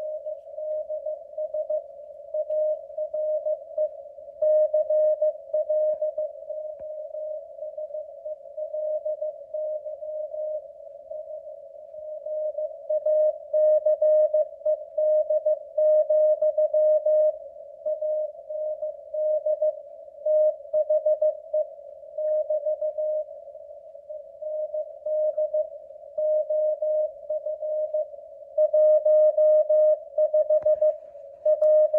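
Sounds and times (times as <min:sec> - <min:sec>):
faint static clicks: 0:00.0 - 0:04.8, 0:05.4 - 0:13.6, 0:30.4 - 0:31.9.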